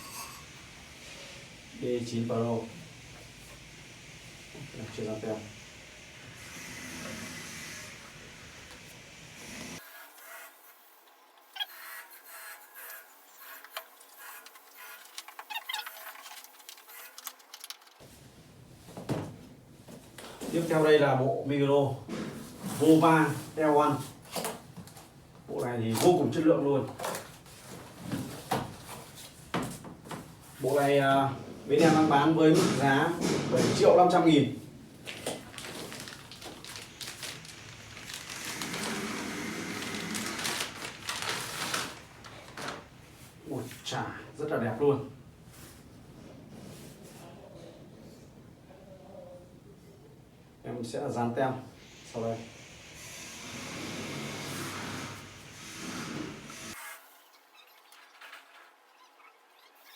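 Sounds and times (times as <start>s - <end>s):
packaging rustling and scraping: 35.0s - 43.4s.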